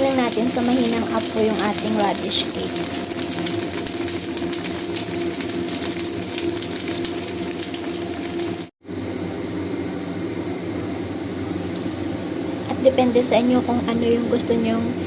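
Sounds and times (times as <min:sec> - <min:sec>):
food sizzling in oil: 0:00.0 - 0:08.7.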